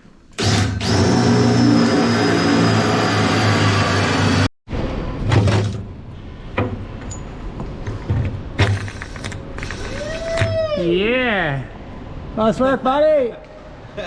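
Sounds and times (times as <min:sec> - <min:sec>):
electric drill motor whine: 0:00.4 - 0:04.5.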